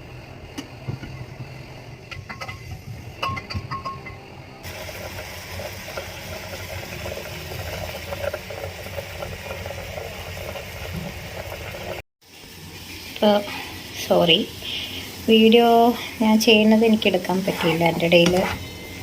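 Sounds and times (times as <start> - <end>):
water bubbling at a boil: 4.6 - 12.0.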